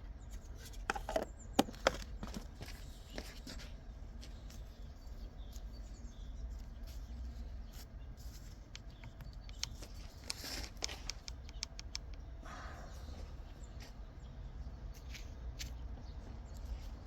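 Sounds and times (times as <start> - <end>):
tools clicking and tapping: 8.7 - 12.2.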